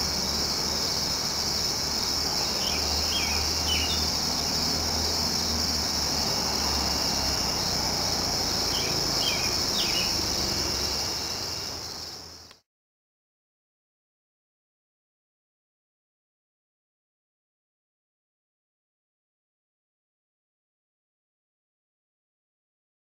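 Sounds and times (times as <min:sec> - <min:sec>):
crickets trilling: 0:00.0 - 0:12.6
bird chirping: 0:02.3 - 0:04.5, 0:08.6 - 0:10.6.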